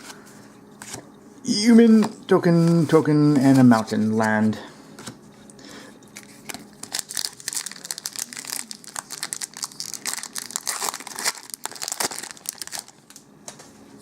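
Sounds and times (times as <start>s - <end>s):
plastic wrapper crinkling and tearing: 6.1s - 13.3s.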